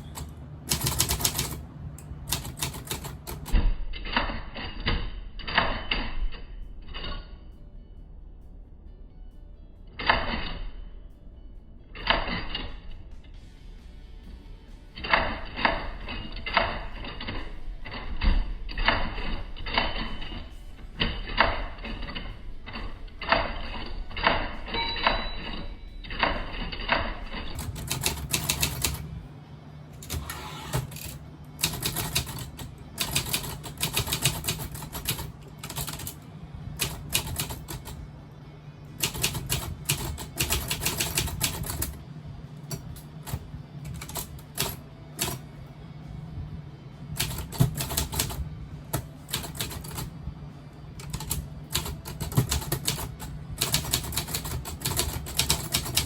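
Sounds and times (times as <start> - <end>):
typewriter keys clicking: 0.0 - 6.1, 21.0 - 29.0, 30.0 - 36.2, 36.8 - 38.0, 39.0 - 42.0, 42.7 - 45.4, 47.2 - 50.1, 51.0 - 56.0
steady low hum: 0.0 - 56.0.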